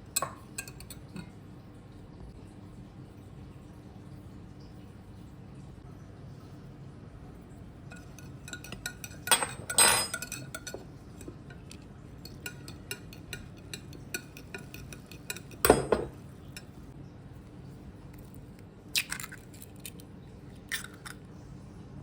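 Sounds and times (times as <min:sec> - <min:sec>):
dishes and utensils clinking: 0:00.1 - 0:01.4, 0:07.9 - 0:16.8.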